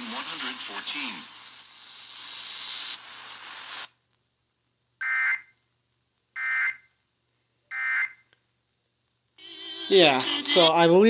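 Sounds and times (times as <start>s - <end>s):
radio static hiss: 0.0s - 4.0s.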